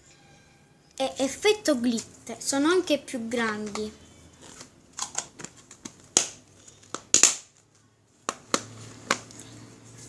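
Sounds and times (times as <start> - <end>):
plastic packs clicking and crackling: 3.7 - 9.4.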